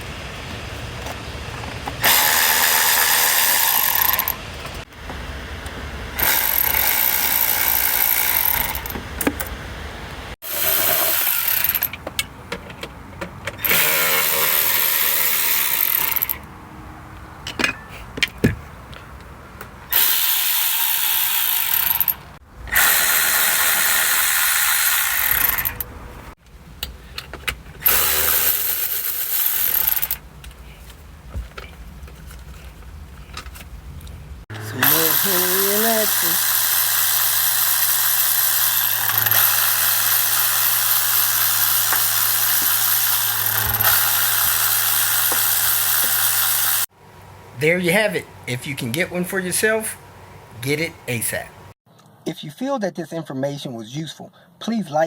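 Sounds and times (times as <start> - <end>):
cordless power ratchet running: 2.0 - 4.4, 6.2 - 9.0, 10.4 - 11.9, 13.6 - 16.4, 19.9 - 25.9, 27.8 - 30.2, 34.5 - 46.9.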